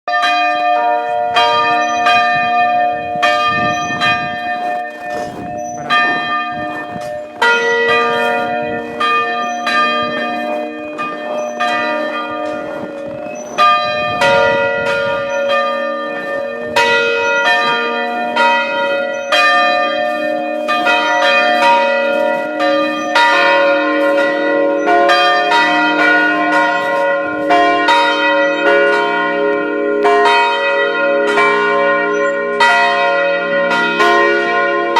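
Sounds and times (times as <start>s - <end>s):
church bells ringing: 0.1s - 34.9s
deeper bell ringing: 0.1s - 34.9s.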